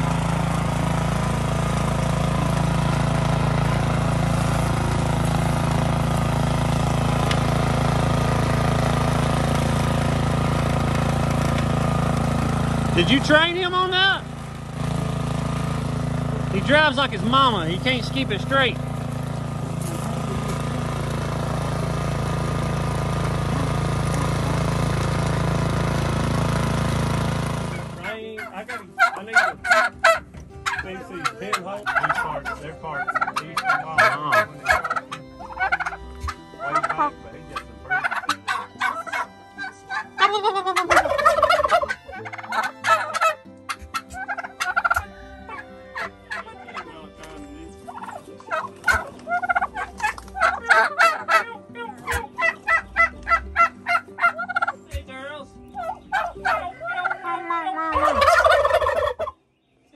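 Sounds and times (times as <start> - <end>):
engine running: 0.0 - 59.5
turkeys gobbling: 28.0 - 59.5.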